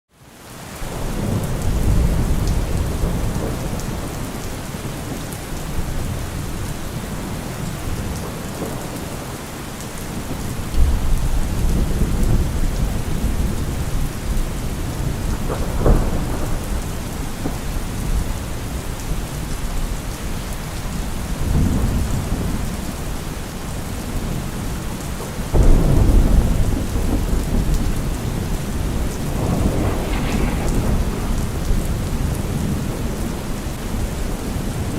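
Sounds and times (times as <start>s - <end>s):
steady rain: 0.1s - 34.9s
thunder rolling: 10.1s - 18.9s, 25.5s - 34.9s.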